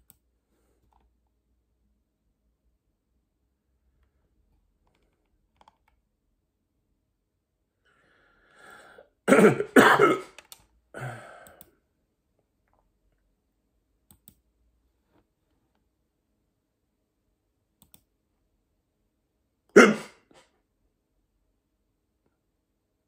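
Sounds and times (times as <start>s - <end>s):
person making throat sounds: 9.3s - 10.4s, 11.0s - 11.6s, 19.7s - 20.5s
faint clicks: 17.8s - 18.1s.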